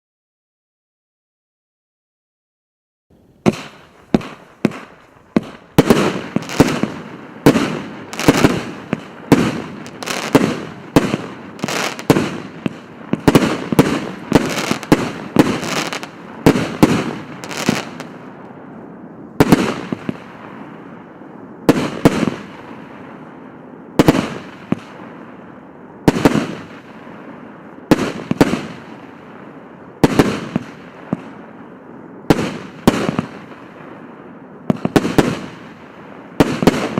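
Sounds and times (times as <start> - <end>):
fireworks hiss: 3.2 - 18.4
fireworks bangs: 3.2 - 36.9.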